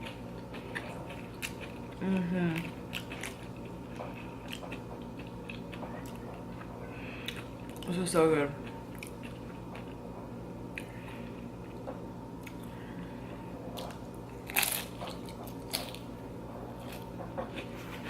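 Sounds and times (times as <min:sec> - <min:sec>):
chips being bitten and chewed: 0:13.8 - 0:16.0.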